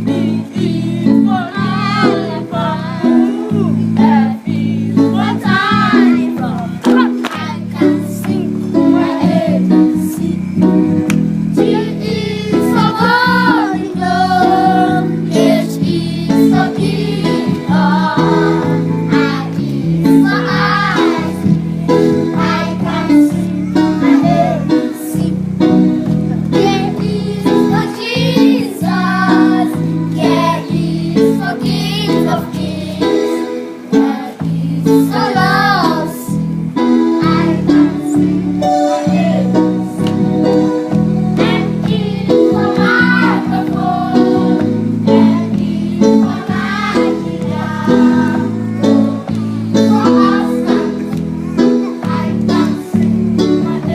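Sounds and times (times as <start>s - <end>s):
song with singing and instruments: 0.0s - 53.9s.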